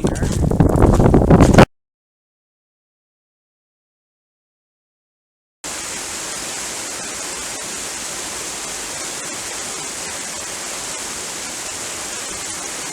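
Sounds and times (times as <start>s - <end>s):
steady rushing hiss: 5.7s - 12.9s.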